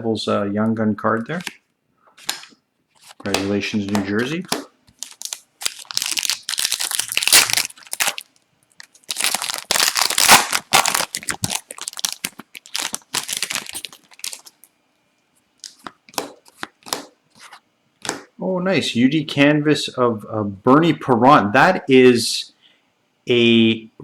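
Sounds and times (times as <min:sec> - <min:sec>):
card pack wrapper tearing: 0:02.2 - 0:14.7.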